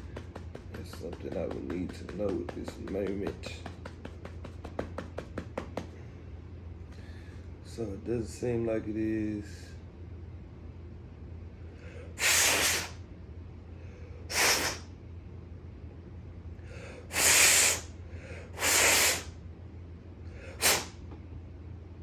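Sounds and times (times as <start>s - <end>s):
man blowing hard puffs: 0.0s - 5.9s, 12.1s - 13.0s, 14.3s - 14.9s, 16.8s - 19.4s, 20.4s - 21.0s
man breathing in: 16.6s - 19.2s.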